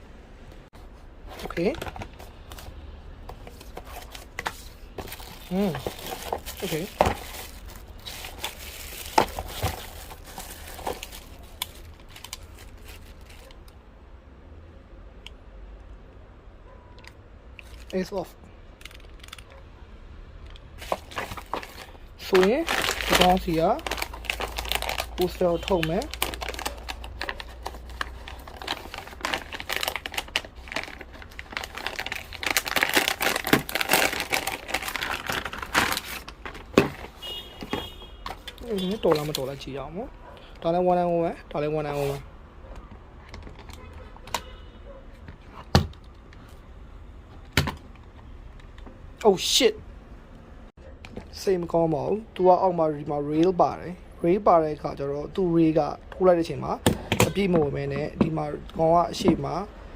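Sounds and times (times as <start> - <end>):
plastic packaging crinkling: 3.4 - 13.7, 20.8 - 39.7.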